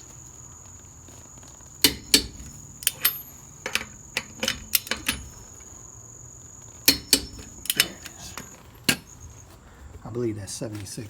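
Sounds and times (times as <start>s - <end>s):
torque wrench metallic clicks: 1.8s - 5.8s, 6.8s - 9.3s.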